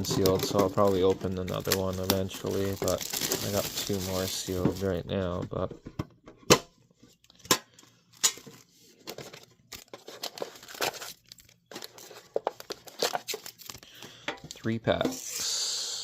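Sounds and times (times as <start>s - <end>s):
plastic wrapping tearing and crinkling: 0.0s - 5.0s, 8.1s - 14.0s.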